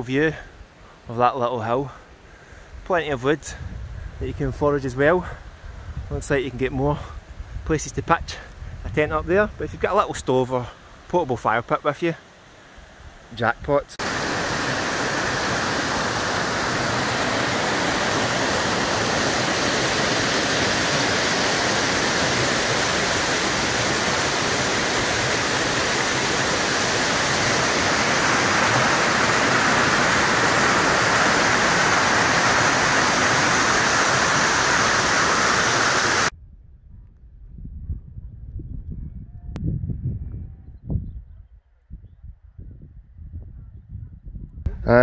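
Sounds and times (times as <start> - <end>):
fast-flowing stream water: 14.0 - 36.3.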